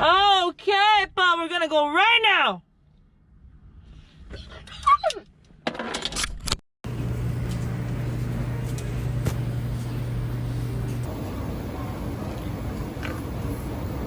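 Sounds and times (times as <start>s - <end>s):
machine humming: 6.8s - 14.0s.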